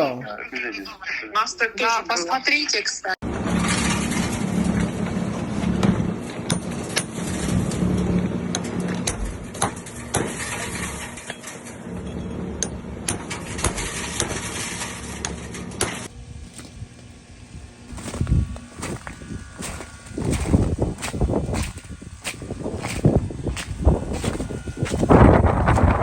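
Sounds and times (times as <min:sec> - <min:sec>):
truck engine running: 0:11.8 - 0:26.0.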